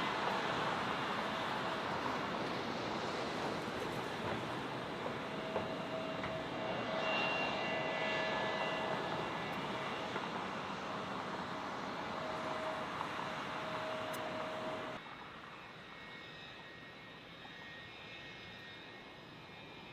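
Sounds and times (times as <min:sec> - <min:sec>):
jet engine rushing noise: 0:00.0 - 0:15.0
faint high whine: 0:00.0 - 0:19.9.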